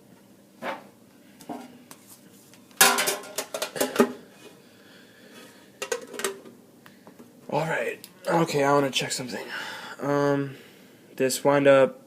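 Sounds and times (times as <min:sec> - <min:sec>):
metal tin clanking and rattling: 0:02.8 - 0:04.1.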